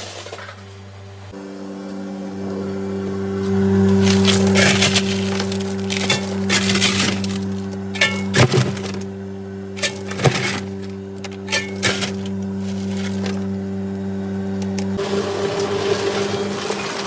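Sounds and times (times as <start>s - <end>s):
ice machine humming: 1.3s - 17.0s
ice cubes clattering: 4.0s - 9.0s, 9.8s - 13.5s.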